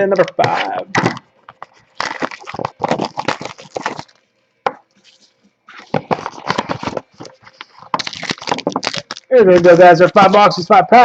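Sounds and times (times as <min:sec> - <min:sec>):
cardboard packaging crinkling: 0:01.5 - 0:04.3, 0:05.0 - 0:10.6.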